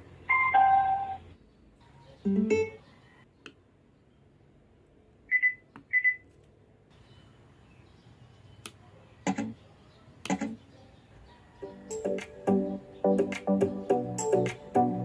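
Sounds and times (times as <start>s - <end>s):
music playing: 11.6s - 15.0s.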